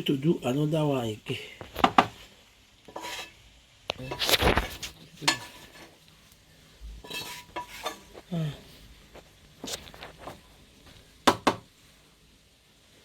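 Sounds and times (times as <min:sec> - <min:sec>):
pots and utensils scraping: 0:01.8 - 0:06.1, 0:07.0 - 0:10.5.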